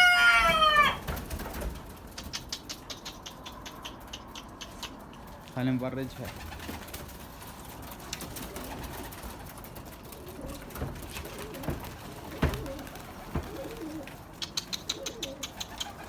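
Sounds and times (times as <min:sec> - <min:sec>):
pigeons cooing: 0:00.0 - 0:05.4, 0:06.3 - 0:16.0
sharp clicks: 0:02.1 - 0:05.4, 0:14.3 - 0:16.0
dull knocks: 0:10.8 - 0:13.8.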